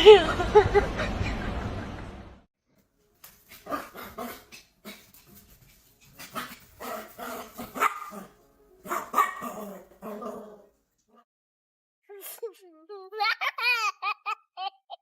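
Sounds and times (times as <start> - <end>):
dog barking: 6.4 - 9.9.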